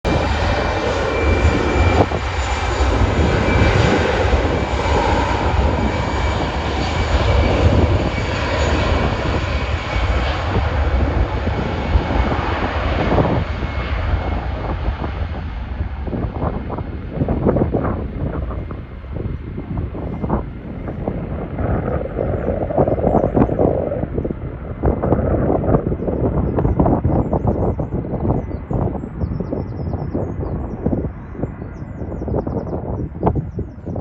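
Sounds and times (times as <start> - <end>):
jet engines roaring: 0.0 - 34.0
faint engine whine: 0.2 - 27.2.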